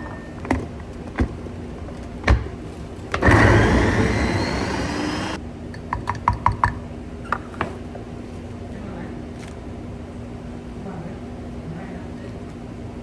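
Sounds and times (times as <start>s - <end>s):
electric food chopper running: 3.2s - 5.4s.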